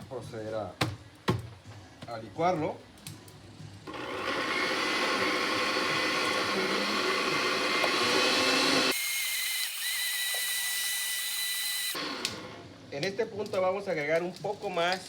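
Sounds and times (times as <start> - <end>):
blender motor running: 3.9 - 12.6.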